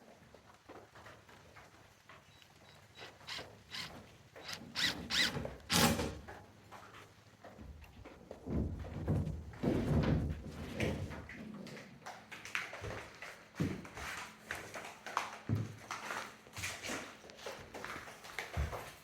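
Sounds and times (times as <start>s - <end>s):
building materials knocking and scraping: 2.8s - 11.4s.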